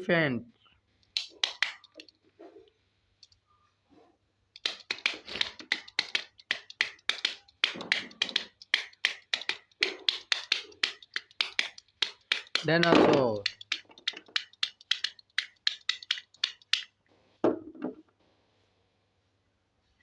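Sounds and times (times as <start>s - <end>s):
plastic toy figures tapping: 1.1s - 2.1s, 4.6s - 17.0s.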